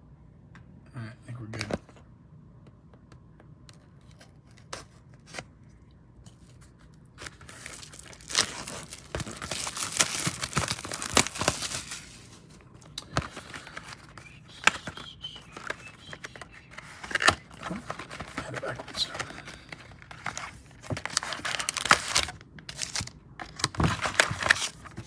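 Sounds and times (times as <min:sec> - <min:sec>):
plastic wrapping tearing and crinkling: 0:07.2 - 0:25.0.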